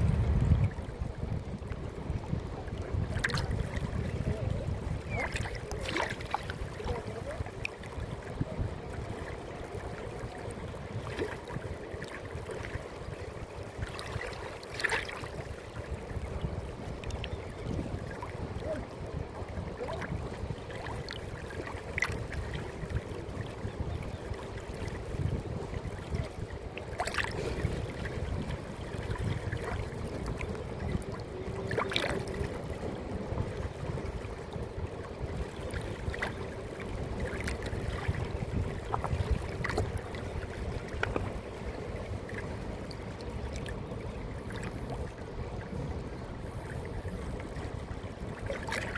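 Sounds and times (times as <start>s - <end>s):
flowing water rushing: 0.0s - 48.9s.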